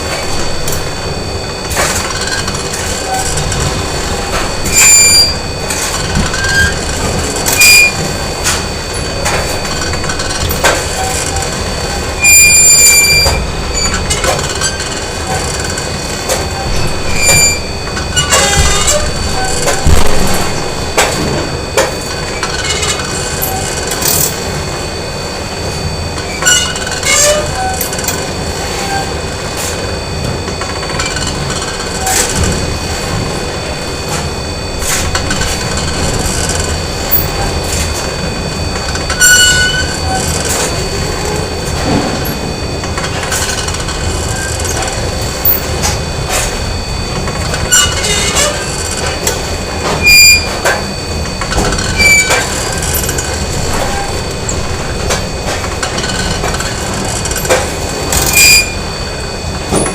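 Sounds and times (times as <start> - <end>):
machinery rumble with whining: 0.0 - 59.9
high squeals: 0.6 - 10.0, 10.9 - 15.4, 16.5 - 20.8.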